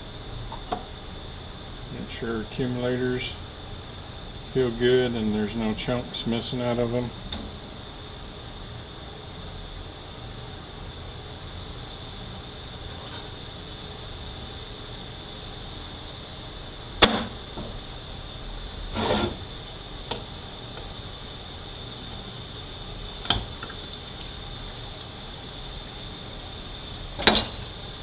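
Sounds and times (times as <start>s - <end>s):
steady high-pitched hiss: 0.0s - 28.0s
metal scraping: 18.9s - 19.4s.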